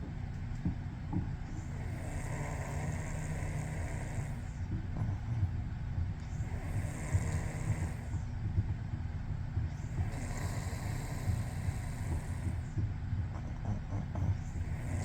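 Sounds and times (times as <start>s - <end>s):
person snoring: 1.8s - 4.4s.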